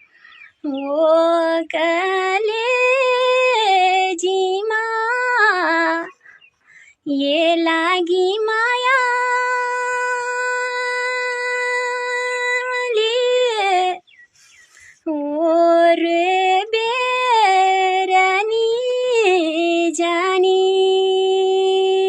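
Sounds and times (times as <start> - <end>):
woman singing long held notes: 15.0 - 22.0.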